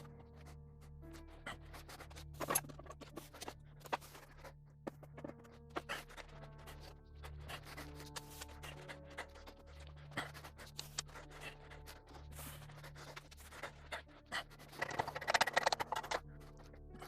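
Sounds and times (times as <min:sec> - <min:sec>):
metal tool clicks and scrapes: 0:14.8 - 0:16.2.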